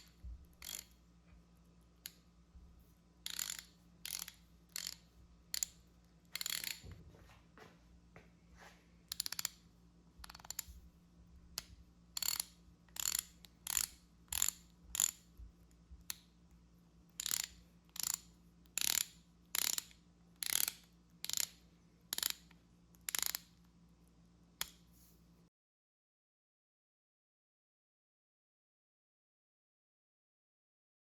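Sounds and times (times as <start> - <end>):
ratchet pawl clicking: 0.0 - 1.0, 3.2 - 6.8, 9.1 - 9.6, 10.2 - 10.8, 11.6 - 15.3, 17.1 - 23.5.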